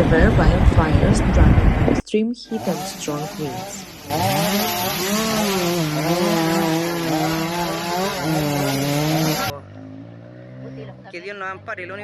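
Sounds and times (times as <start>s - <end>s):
small engine running unsteadily: 2.6s - 9.5s
loud rushing hiss: 2.9s - 9.5s.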